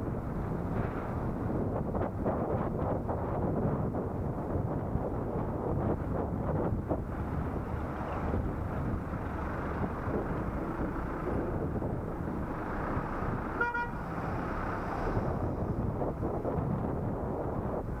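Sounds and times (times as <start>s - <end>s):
wind and road noise: 0.0s - 18.0s
vehicle horn beep: 13.6s - 14.0s.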